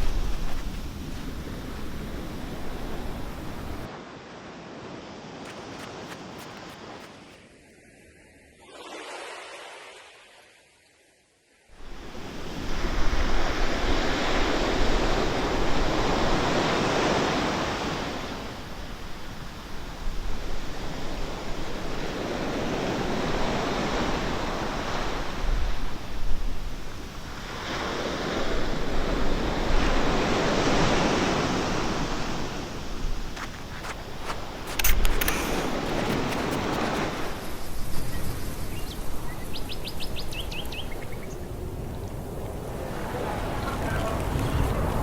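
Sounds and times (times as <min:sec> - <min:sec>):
rushing wind: 0:00.0 - 0:07.4, 0:11.8 - 0:45.0.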